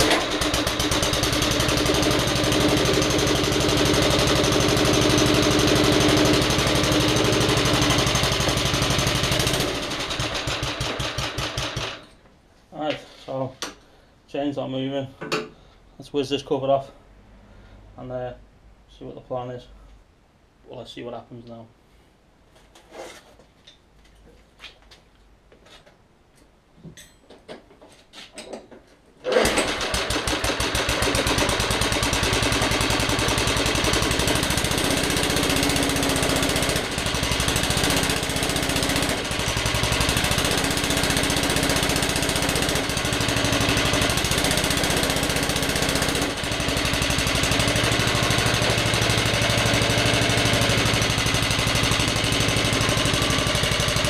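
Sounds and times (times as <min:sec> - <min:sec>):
lawnmower engine running: 0:00.0 - 0:12.1, 0:29.2 - 0:54.0.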